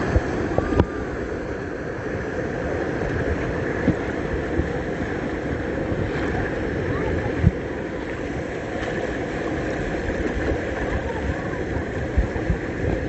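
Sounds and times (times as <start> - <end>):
flowing river water: 0.0 - 13.0
faint voices: 6.0 - 10.0, 10.6 - 13.0.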